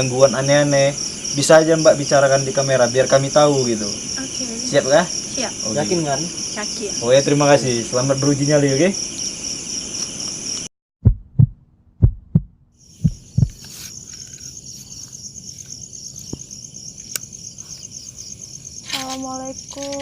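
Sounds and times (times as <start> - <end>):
night insects trilling: 0.0 - 10.7, 12.8 - 20.0
heartbeat thumps: 11.0 - 13.6.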